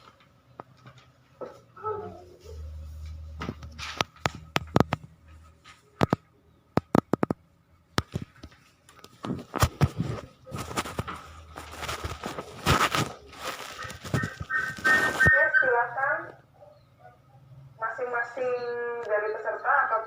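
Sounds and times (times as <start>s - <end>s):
sharp clicks and knocks: 3.4s - 5.2s, 6.0s - 10.0s
rustling: 8.1s - 15.7s.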